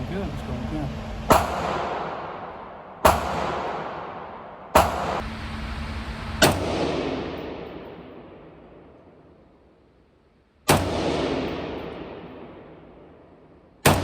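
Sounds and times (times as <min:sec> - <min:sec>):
gunshots with echo: 0:01.2 - 0:05.2, 0:06.4 - 0:09.6, 0:10.7 - 0:14.0.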